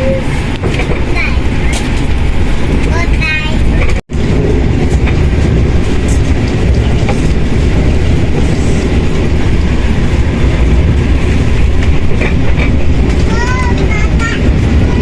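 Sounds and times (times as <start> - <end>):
faint rail clatter: 0.0 - 15.0
train rumbling: 0.0 - 15.0.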